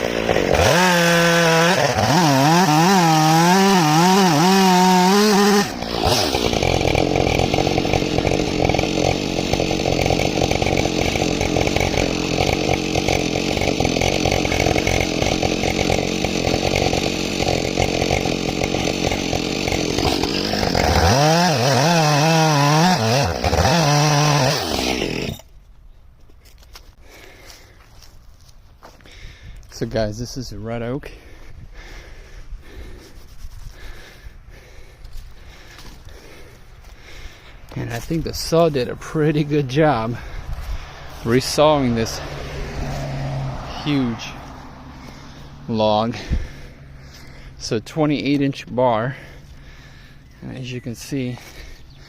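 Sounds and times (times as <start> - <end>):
chain ripping through log: 0.0 - 25.5
chainsaw revving: 0.0 - 25.5, 31.8 - 52.0.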